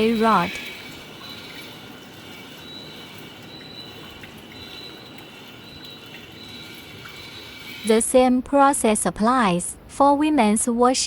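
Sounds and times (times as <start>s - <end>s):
water spraying hiss: 0.0s - 3.4s.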